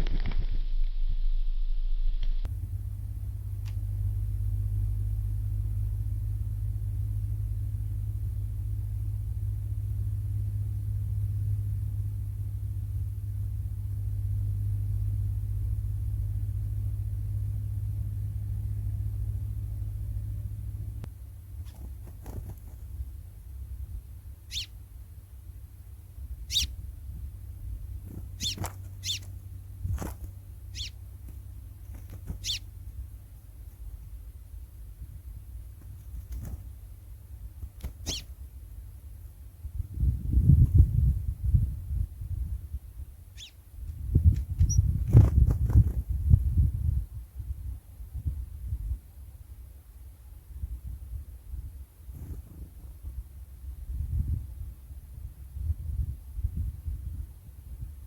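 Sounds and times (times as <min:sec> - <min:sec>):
low steady rumble: 0:00.0 - 0:58.0
short sharp bird calls: 0:24.5 - 0:24.8, 0:26.5 - 0:26.7, 0:28.4 - 0:29.3, 0:30.7 - 0:31.0, 0:32.2 - 0:32.7, 0:37.9 - 0:38.3, 0:43.4 - 0:43.6.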